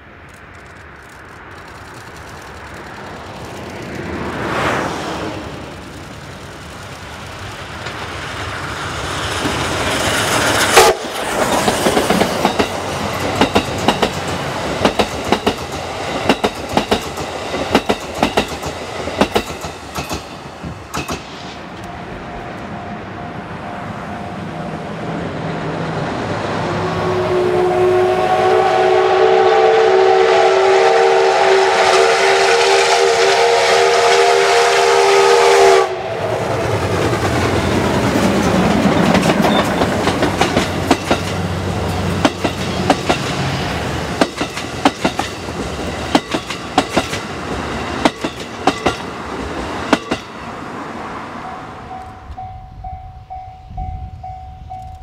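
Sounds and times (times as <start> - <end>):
train wheels clicking over rail joints: 0.2 - 4.4, 5.5 - 22.0, 36.6 - 50.4
steam locomotive exhaust: 26.5 - 48.9
steam whistle: 26.7 - 36.6.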